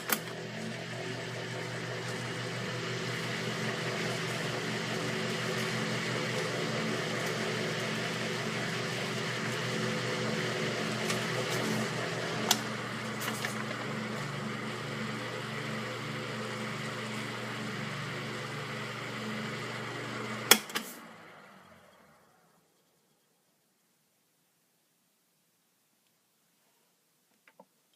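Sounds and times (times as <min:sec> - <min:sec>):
fan winding down: 0:00.0 - 0:23.2
electric fan humming and whirring: 0:00.0 - 0:23.8
fan switch click: 0:20.5 - 0:21.0.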